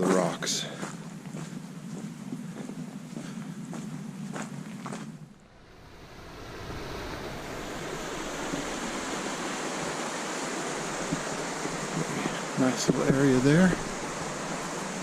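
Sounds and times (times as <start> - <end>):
river water running over rocks: 6.3 - 15.0.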